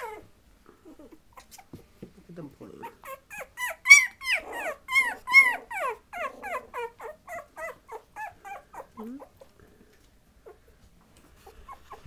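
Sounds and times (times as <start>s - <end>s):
puppies squealing and yipping: 0.0s - 1.8s, 2.8s - 9.4s, 11.3s - 12.0s.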